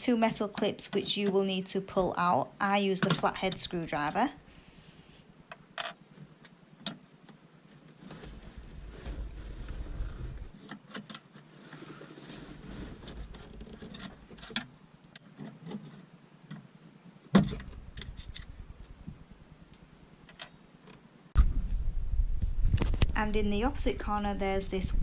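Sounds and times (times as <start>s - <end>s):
low rumbling handling noise: 8.0s - 10.6s, 17.4s - 19.6s, 21.4s - 25.0s.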